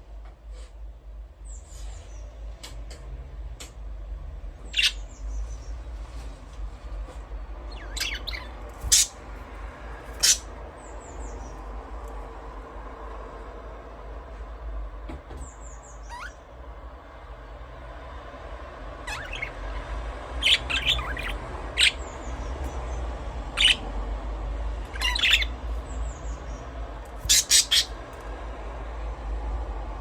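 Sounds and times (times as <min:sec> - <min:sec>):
budgerigars chirping: 0:04.7 - 0:05.6, 0:07.7 - 0:09.2, 0:10.2 - 0:11.5, 0:15.8 - 0:16.4, 0:19.0 - 0:23.0, 0:23.6 - 0:23.8, 0:24.9 - 0:26.6, 0:27.2 - 0:28.0.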